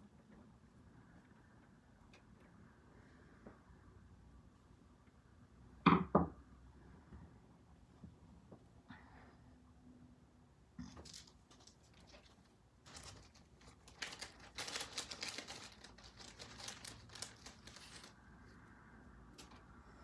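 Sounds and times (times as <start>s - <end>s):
plastic packaging crinkling: 10.8s - 18.6s, 19.3s - 19.7s.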